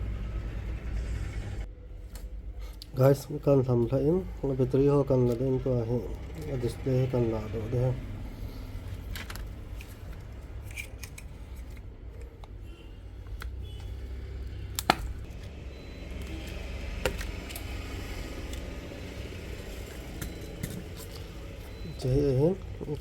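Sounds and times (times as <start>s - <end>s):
repair tools clicking and scraping: 8.8s - 12.6s, 19.6s - 21.8s.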